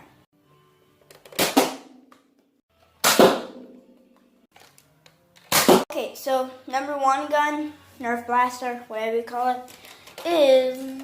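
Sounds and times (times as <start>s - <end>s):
foam dart blaster clacking: 3.0s - 3.7s, 5.5s - 5.8s.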